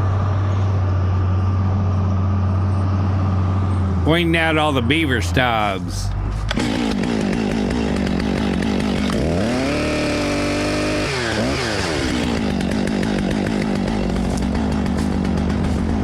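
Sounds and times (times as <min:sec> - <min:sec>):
chainsaw engine revving: 0:06.3 - 0:16.0.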